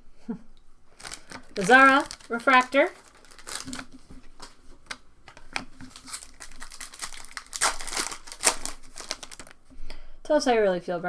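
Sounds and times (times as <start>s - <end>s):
packaging crinkling: 1.0s - 9.6s.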